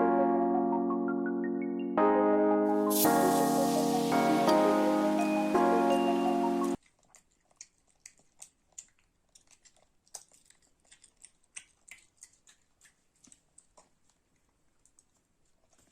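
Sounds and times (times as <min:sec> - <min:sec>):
background music: 0:00.0 - 0:06.8
faint crunching and clicking: 0:06.8 - 0:15.9.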